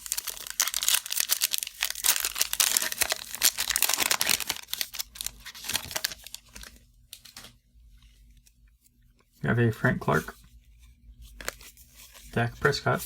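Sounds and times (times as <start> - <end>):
wrapper tearing and crinkling: 0.0 - 7.5.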